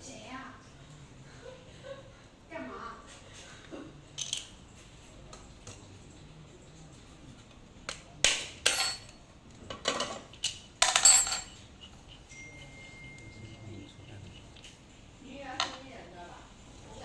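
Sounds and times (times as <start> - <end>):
metal tools clinking and knocking: 4.2 - 4.6, 8.4 - 9.2, 9.8 - 11.6.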